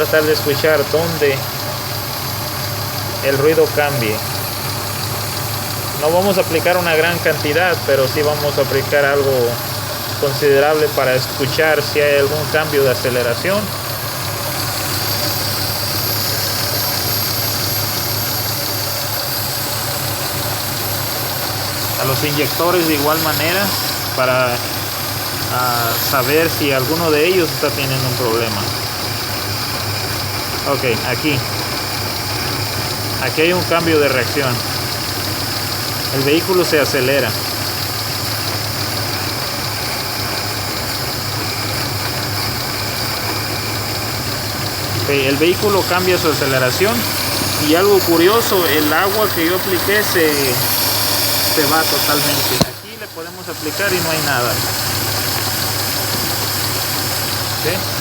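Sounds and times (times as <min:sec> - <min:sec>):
car engine idling: 0:00.0 - 0:58.0
even hiss: 0:44.9 - 0:58.0.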